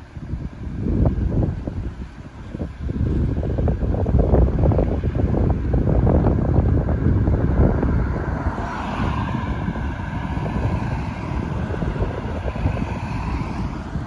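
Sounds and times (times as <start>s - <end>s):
wind buffeting microphone: 0.0s - 14.0s
truck diesel engine passing: 6.8s - 14.0s.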